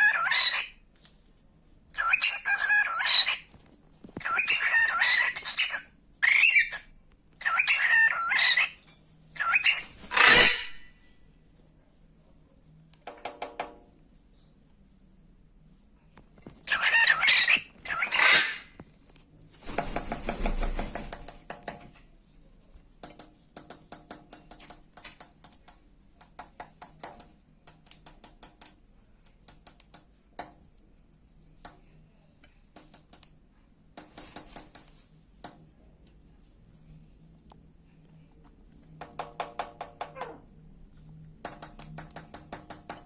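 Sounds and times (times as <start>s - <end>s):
bird beak tapping: 23.0s - 30.6s, 41.4s - 43.0s.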